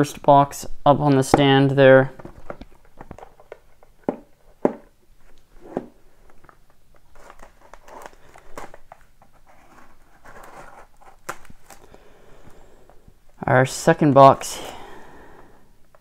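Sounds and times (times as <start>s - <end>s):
packaging rustling and crinkling: 2.1s - 12.0s.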